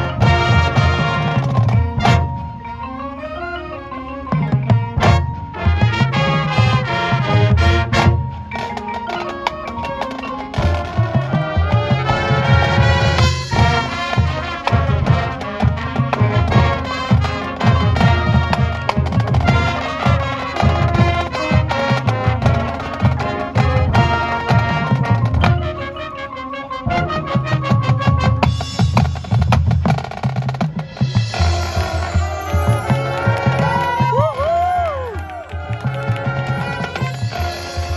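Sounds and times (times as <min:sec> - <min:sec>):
brass band playing: 0:00.0 - 0:37.9
marching drums beat: 0:10.0 - 0:25.8, 0:27.0 - 0:37.9.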